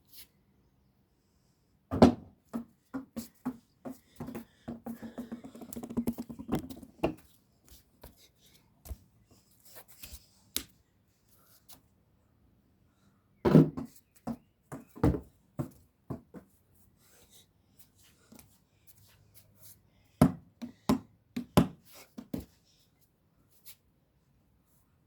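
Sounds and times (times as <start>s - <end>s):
basketball bouncing: 4.2s - 7.1s.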